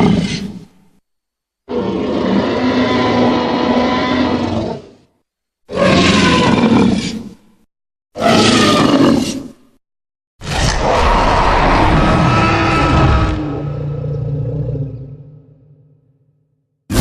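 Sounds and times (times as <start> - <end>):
synthetic dinosaur roars: 0.0 - 0.6, 1.7 - 5.1, 5.7 - 7.4, 8.2 - 9.6, 10.4 - 15.6.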